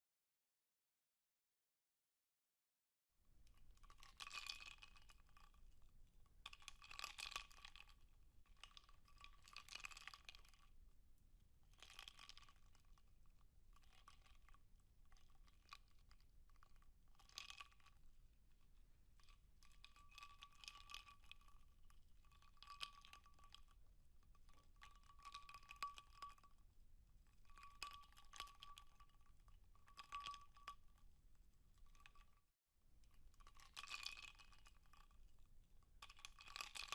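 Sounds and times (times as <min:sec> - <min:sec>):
ice cubes clinking in a glass: 0:27.5 - 0:30.8.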